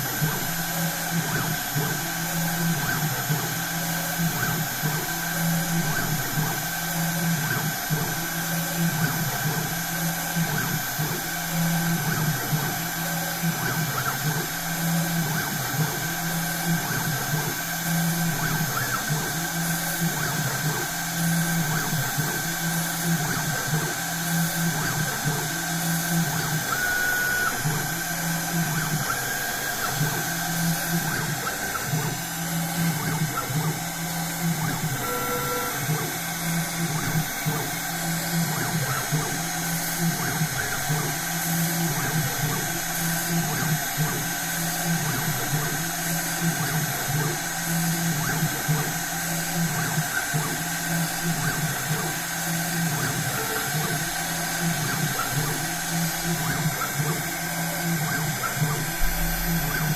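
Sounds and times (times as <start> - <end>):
low motor hum pulsing: 51.2 - 59.9.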